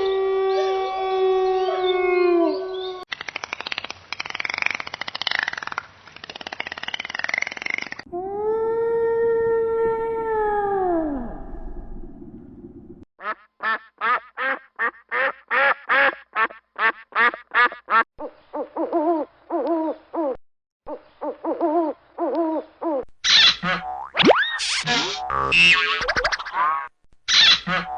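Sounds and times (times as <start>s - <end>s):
duck quacking: 13.2s - 18.0s, 27.4s - 27.9s.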